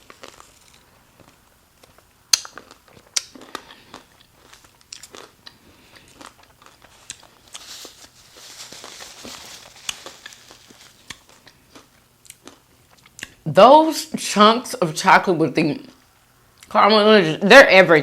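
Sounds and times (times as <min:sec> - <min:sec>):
crinkling: 0:00.0 - 0:13.1
crunchy bites: 0:00.0 - 0:13.4.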